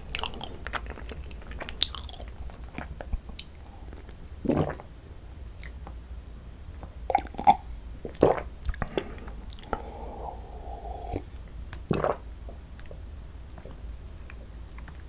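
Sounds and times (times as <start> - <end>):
chewing sticky rice cake: 0.0 - 4.8.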